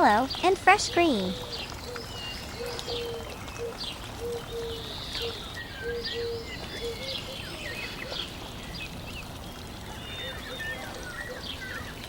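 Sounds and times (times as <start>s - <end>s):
birds chirping and calling: 0.1s - 9.2s, 9.9s - 12.0s.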